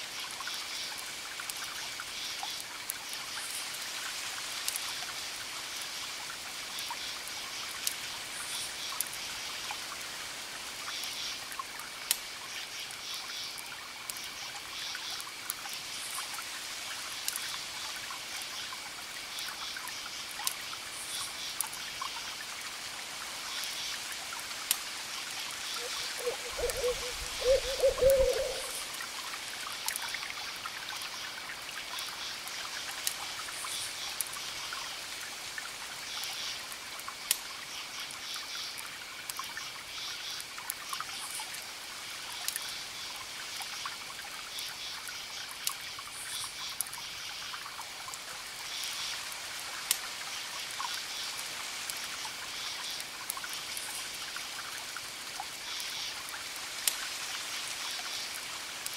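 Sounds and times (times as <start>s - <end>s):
fire crackling and popping: 24.6s - 27.3s, 37.2s - 37.5s, 49.8s - 50.1s
owl hooting: 25.8s - 28.9s.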